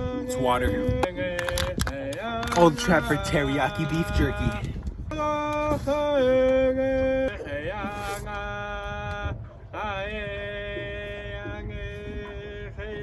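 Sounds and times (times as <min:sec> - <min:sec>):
man singing long held notes: 0:00.0 - 0:13.0.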